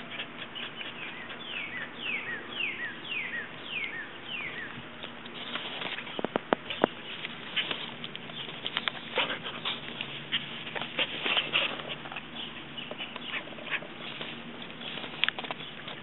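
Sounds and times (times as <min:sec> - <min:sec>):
puppy chewing grass: 0:03.7 - 0:16.0.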